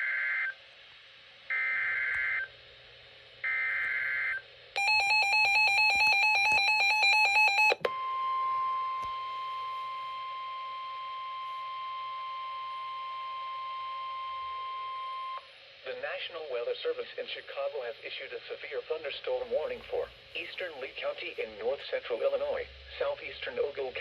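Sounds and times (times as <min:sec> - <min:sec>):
steady single-pitch alarm tone: 0:03.4 - 0:15.5.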